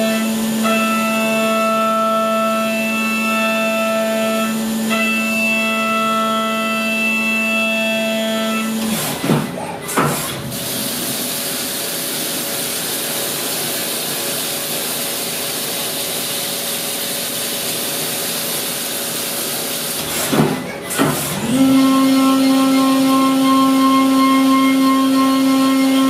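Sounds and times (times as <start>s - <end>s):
milling machine: 0.0s - 26.0s
coolant spray hiss: 10.4s - 20.4s
steady pitched hum: 21.4s - 26.0s.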